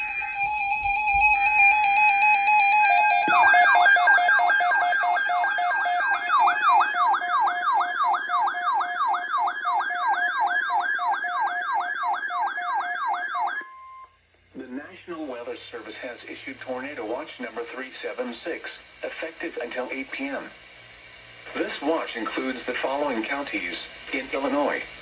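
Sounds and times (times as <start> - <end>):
siren-like warbling tone: 0.0 - 14.0.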